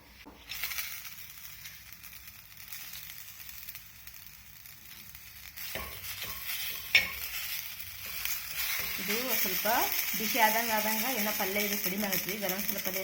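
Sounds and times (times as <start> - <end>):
spices sizzling in a pan: 0.0 - 13.0
spoon scraping and stirring: 5.6 - 9.1.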